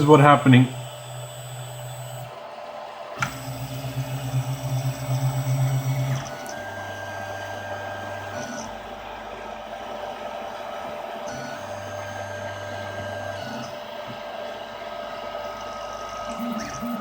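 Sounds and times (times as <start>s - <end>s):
printer motors humming and whining: 0.0s - 17.0s
click: 3.2s - 3.6s, 5.6s - 6.7s.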